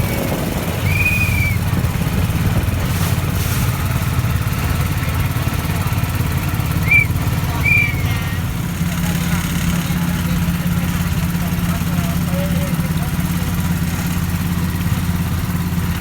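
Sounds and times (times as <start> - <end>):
boat engine rumbling: 0.0 - 16.0
short high chirps: 0.8 - 1.7.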